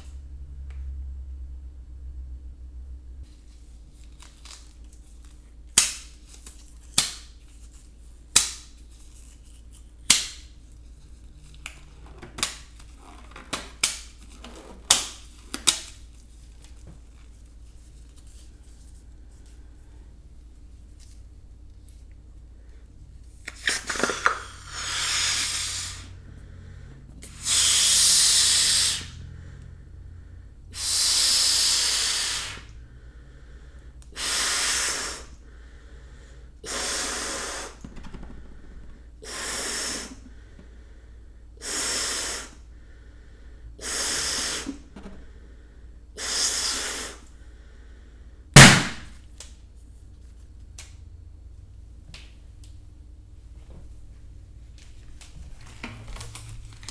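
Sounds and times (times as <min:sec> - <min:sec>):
balloon snapping: 0:05.8 - 0:06.2, 0:08.3 - 0:08.7, 0:10.0 - 0:10.6, 0:11.6 - 0:16.0, 0:23.5 - 0:26.0, 0:36.7 - 0:40.2, 0:48.6 - 0:49.5
balloon being blown up: 0:23.6 - 0:26.1, 0:27.4 - 0:29.1, 0:30.8 - 0:32.7, 0:36.6 - 0:40.2, 0:43.8 - 0:45.3, 0:46.2 - 0:47.2, 0:48.6 - 0:49.1.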